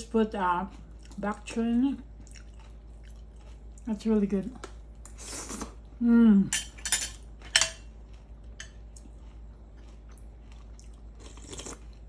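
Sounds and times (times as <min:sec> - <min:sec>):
cutlery and dishes clinking: 0:06.6 - 0:07.9.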